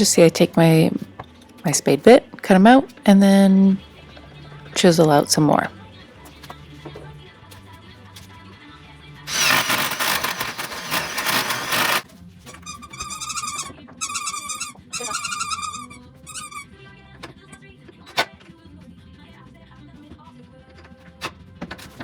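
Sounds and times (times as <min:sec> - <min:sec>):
power drill boring into wood: 0:09.3 - 0:12.0
high wavering squeal: 0:12.7 - 0:16.6.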